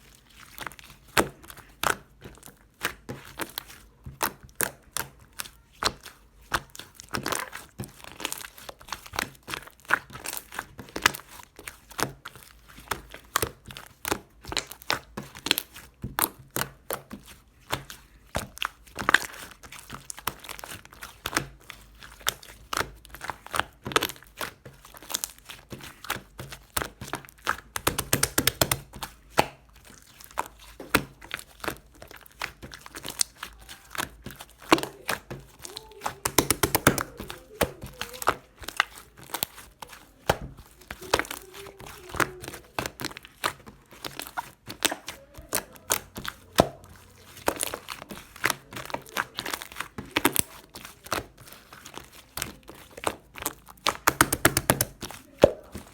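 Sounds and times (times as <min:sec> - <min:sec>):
slime clicking and crackling: 0:00.0 - 0:55.9.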